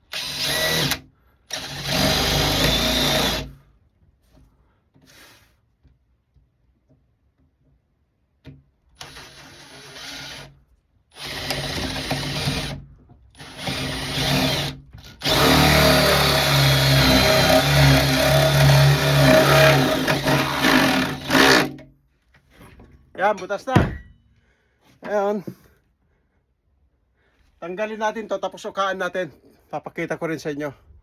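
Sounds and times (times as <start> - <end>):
power drill boring through wood: 0.0 - 3.6, 5.1 - 5.4, 9.0 - 21.8.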